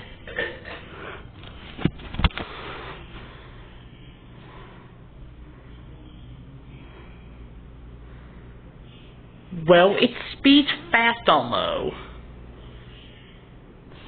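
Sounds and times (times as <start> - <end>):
low motor hum: 0.0 - 10.4.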